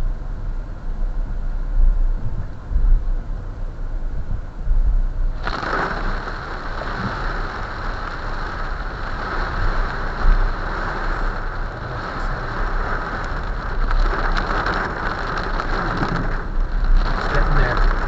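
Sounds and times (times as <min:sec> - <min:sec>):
car engine rumble: 0:00.0 - 0:18.0
heavy rain hitting a car: 0:05.3 - 0:18.0.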